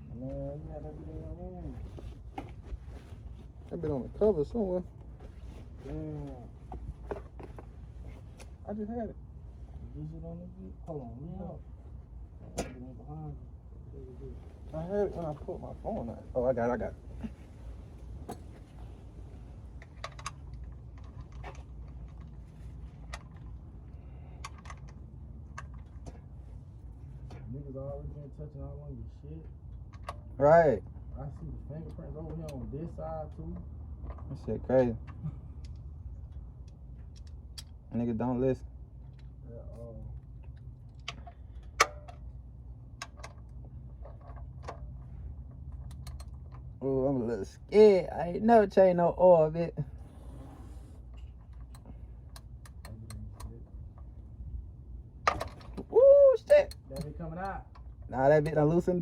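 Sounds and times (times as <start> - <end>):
low steady hum: 0.0 - 59.0
hand tools clicking and tapping: 45.6 - 46.7.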